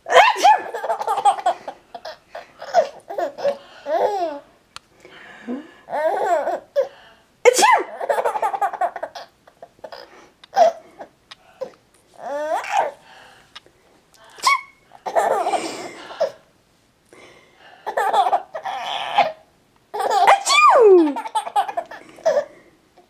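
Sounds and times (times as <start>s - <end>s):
baby laughing: 0.1s - 4.4s, 5.9s - 6.9s, 7.8s - 11.1s, 12.2s - 13.0s, 14.4s - 16.4s, 17.9s - 22.5s
adult sneezing: 7.5s - 7.9s.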